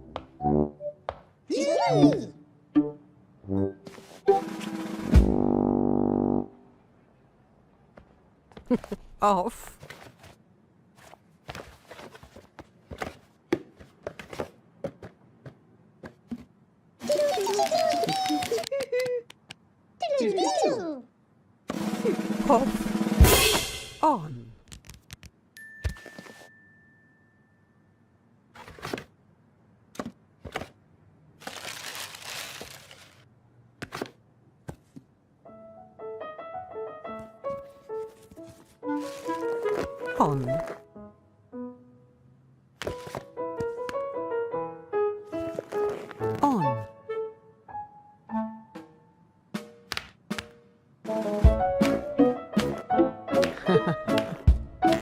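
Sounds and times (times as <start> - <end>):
plinking glockenspiel music: 25.6 - 28.0.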